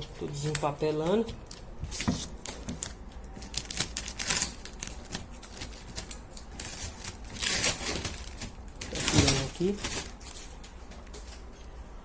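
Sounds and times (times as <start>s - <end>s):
masking paper rustling: 0.0s - 11.5s
tape tearing crackles: 1.4s - 10.4s.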